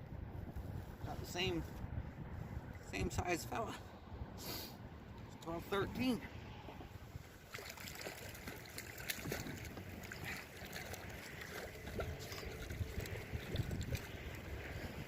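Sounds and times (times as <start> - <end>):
water lapping against boat: 6.6 - 15.0.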